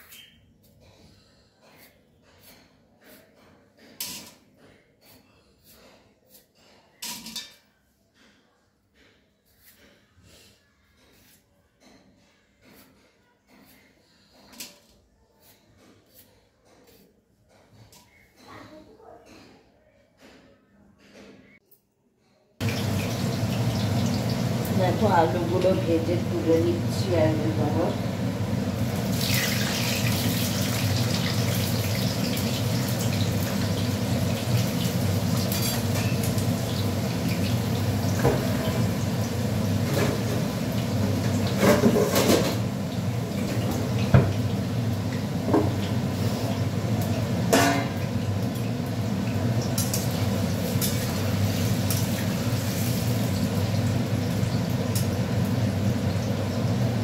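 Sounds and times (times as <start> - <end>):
potatoes sizzling in oil: 22.6 - 57.0
spatula clinking and scraping pan: 34.5 - 36.8, 47.5 - 48.1, 49.7 - 52.1.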